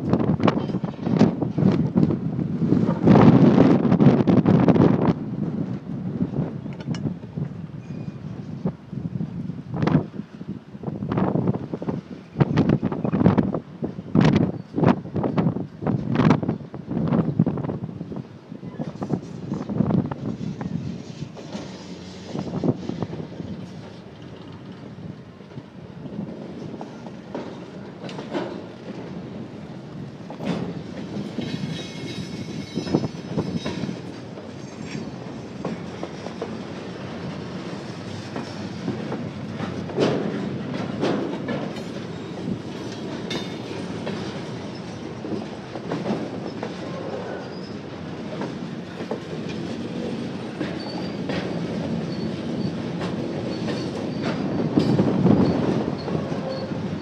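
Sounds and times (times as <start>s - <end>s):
freight train rumbling: 0.0s - 57.0s
faint wheel squeal: 7.8s - 8.3s, 46.5s - 47.9s, 50.8s - 52.8s, 53.5s - 54.7s, 55.3s - 57.0s
wheels clicking over rail joints: 21.0s - 57.0s.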